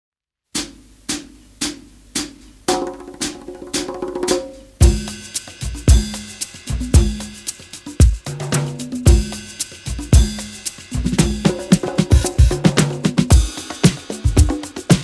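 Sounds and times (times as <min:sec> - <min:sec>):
background music with drum beat: 0:00.6 - 0:15.0
deep kick drum: 0:04.8 - 0:07.4, 0:08.0 - 0:08.3, 0:09.1 - 0:15.0.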